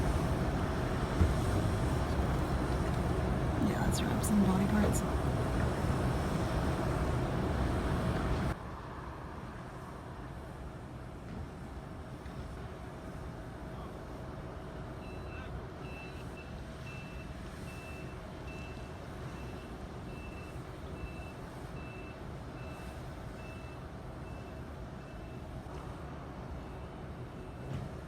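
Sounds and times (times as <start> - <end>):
engine rumble: 0.0 - 8.6.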